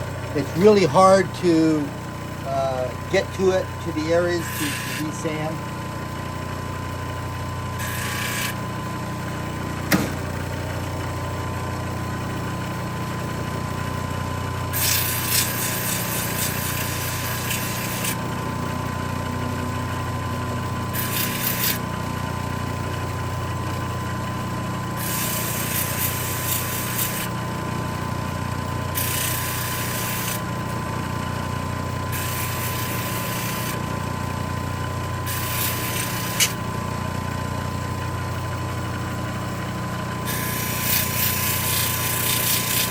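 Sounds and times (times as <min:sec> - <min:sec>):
machine motor humming: 0:00.0 - 0:42.9
sharp click: 0:09.8 - 0:10.3
metal grinding on wet wheel: 0:21.0 - 0:21.8, 0:40.3 - 0:42.9.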